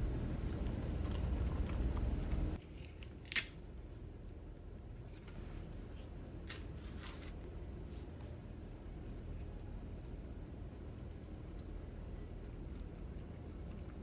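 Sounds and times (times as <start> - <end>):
low steady rumble: 0.0 - 2.6.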